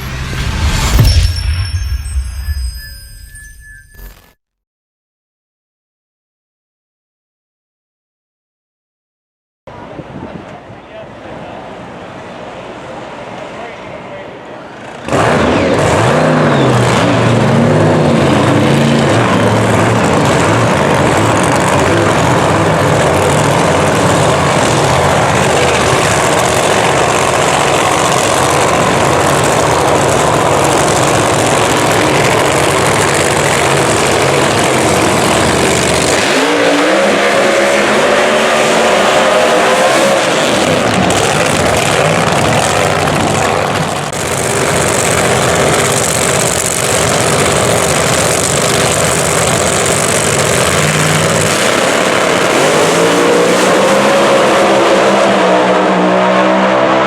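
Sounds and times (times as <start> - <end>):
drag racing engine revving: 14.8 - 57.0.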